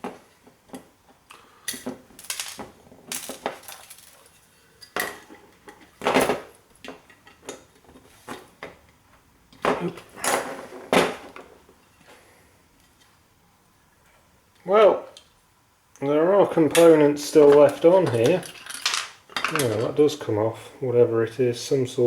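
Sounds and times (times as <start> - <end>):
metal tools clinking and scraping: 1.7 - 6.3, 17.4 - 20.0.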